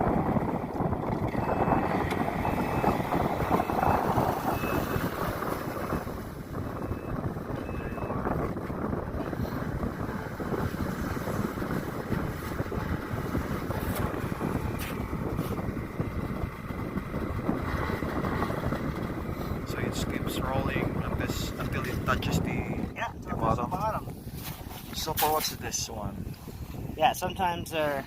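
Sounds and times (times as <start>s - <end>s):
wind buffeting microphone: 0.0s - 28.0s
faint short high beeps: 1.3s - 5.0s.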